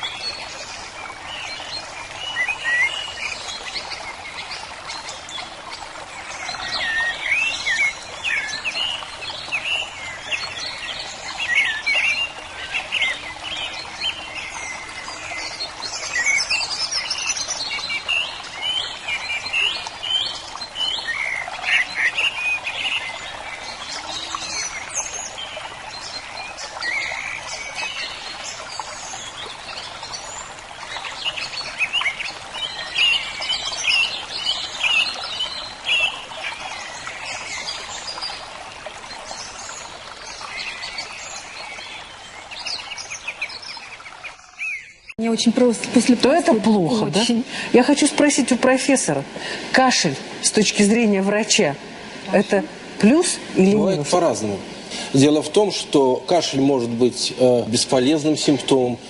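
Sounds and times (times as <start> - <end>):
birds singing and chirping: 0.0 - 59.0
background hiss: 49.2 - 59.0.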